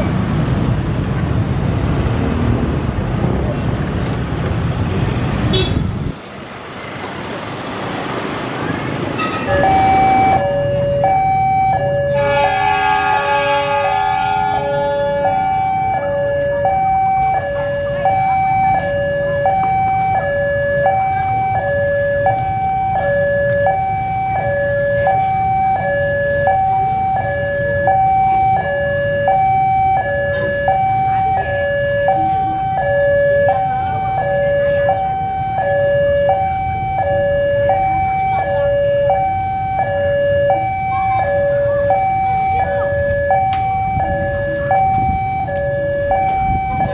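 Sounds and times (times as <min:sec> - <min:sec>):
crossing two-tone alarm: 0:08.7 - 0:46.9
train horn: 0:09.2 - 0:09.6, 0:12.1 - 0:15.4.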